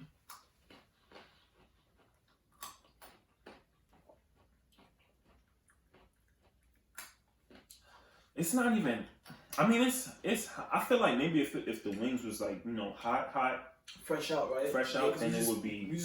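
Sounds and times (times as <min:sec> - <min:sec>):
people eating clicks and smacks: 0:00.0 - 0:08.4, 0:09.2 - 0:09.7, 0:11.8 - 0:12.2.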